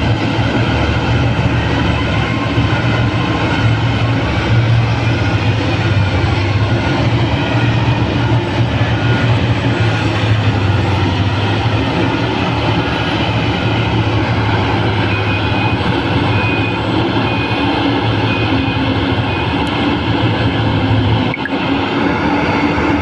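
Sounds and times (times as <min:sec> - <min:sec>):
diesel engine running under load: 0:00.0 - 0:23.0
high beeps: 0:21.3 - 0:21.5.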